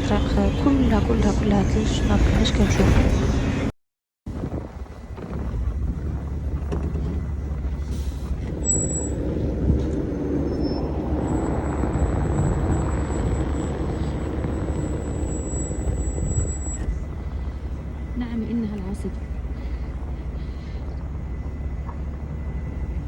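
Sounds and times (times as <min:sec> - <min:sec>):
car engine and tyres rumbling: 0:00.0 - 0:03.7, 0:04.3 - 0:23.0
faint high whine: 0:00.0 - 0:03.7, 0:04.3 - 0:23.0.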